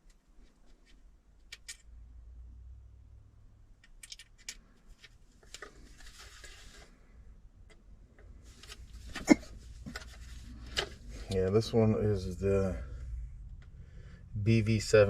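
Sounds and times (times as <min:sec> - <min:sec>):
soft rustle: 0:04.7 - 0:07.2, 0:08.4 - 0:11.6.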